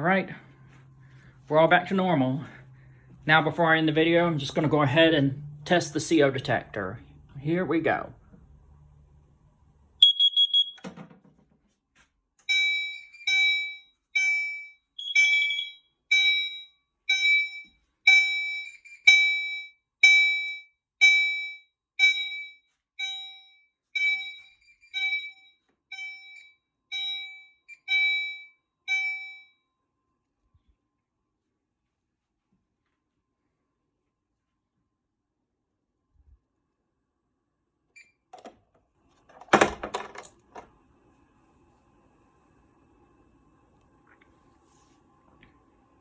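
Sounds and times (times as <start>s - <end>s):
pulsing fire alarm horns: 10.0s - 10.8s, 12.4s - 29.5s
short high beep: 10.0s - 10.8s.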